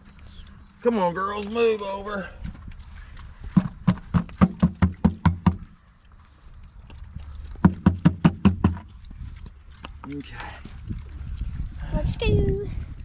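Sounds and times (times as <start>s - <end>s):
rapid hollow knocks: 3.5s - 5.6s, 7.6s - 8.9s.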